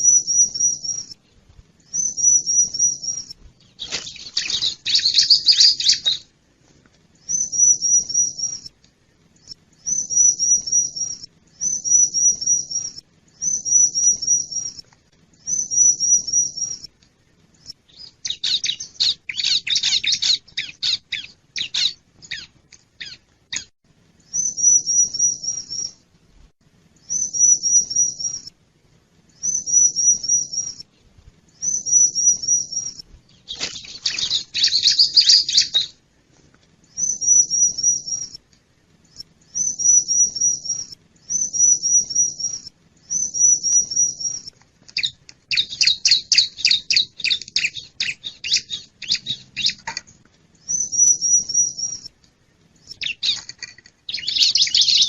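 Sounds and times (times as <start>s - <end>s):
bird calling high phrases: 1.9s - 6.3s, 17.7s - 23.7s, 31.6s - 36.0s, 39.1s - 49.9s, 52.8s - 53.5s, 54.1s - 55.0s.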